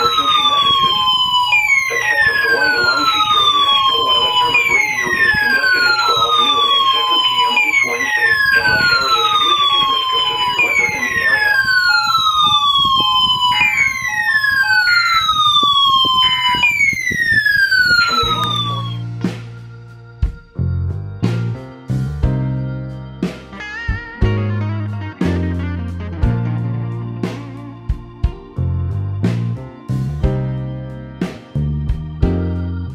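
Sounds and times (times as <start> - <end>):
steady alert tone: 0.0 - 19.2
electronic siren sweeping down: 0.0 - 20.2
intermittent beeping: 0.0 - 24.5.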